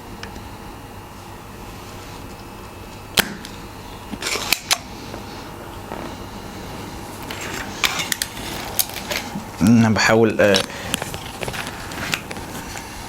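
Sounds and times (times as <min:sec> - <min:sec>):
desoldering pump snap: 0:03.2 - 0:04.9
scraping rustle: 0:10.8 - 0:13.0.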